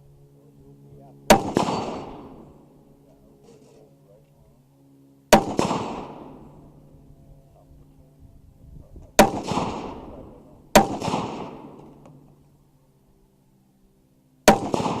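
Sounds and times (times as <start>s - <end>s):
rifle shots echoing: 1.3s - 2.7s, 5.3s - 6.8s, 9.1s - 12.1s, 14.4s - 15.0s.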